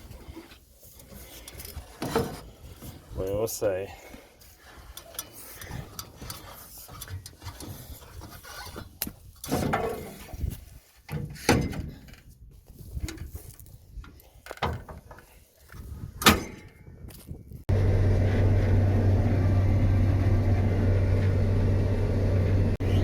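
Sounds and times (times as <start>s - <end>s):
clunks and clicks of latches: 16.2s - 16.8s
engine humming: 17.7s - 23.0s.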